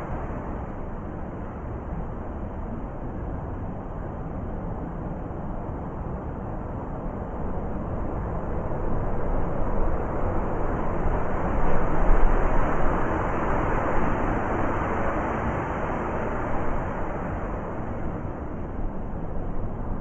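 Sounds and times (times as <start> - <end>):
blizzard wind gusting: 0.0 - 2.4, 7.0 - 20.0.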